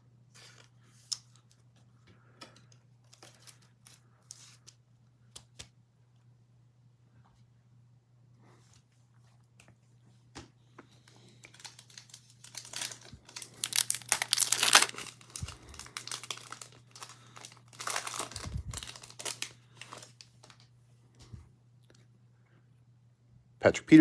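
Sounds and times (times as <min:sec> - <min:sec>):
small clicks and handling noises: 0:00.4 - 0:06.3, 0:09.4 - 0:20.7
plastic wrapper tearing and crinkling: 0:11.2 - 0:20.7.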